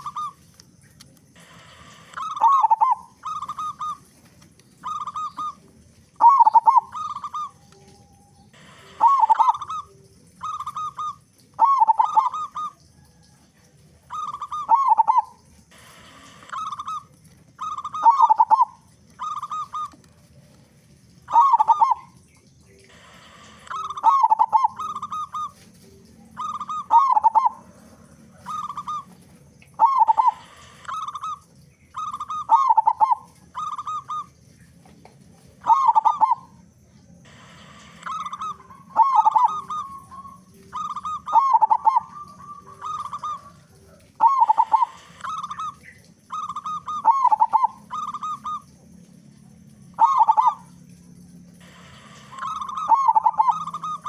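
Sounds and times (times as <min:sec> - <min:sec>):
dove cooing: 0:00.0 - 0:54.0.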